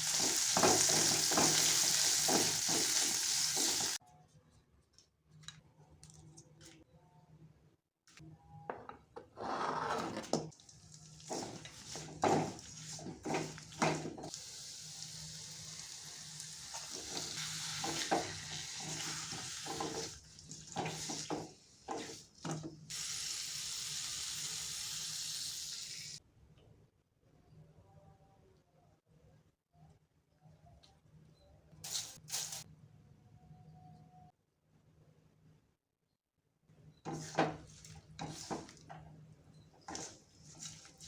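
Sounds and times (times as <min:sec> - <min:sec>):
frying sizzle: 0:00.0 - 0:04.0, 0:10.5 - 0:22.2, 0:22.9 - 0:26.2
spatula scraping and knocking pan: 0:11.2 - 0:14.3.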